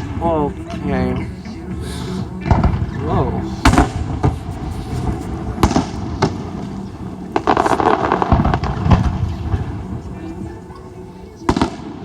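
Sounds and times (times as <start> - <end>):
fireworks crackling: 0.0 - 12.0
fireworks bangs: 2.2 - 10.3, 11.4 - 12.0.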